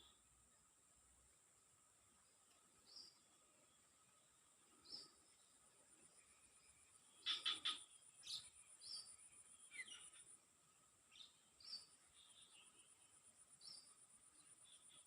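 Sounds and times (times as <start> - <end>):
bird chirps: 7.0 - 10.4
insect trilling: 7.2 - 8.5.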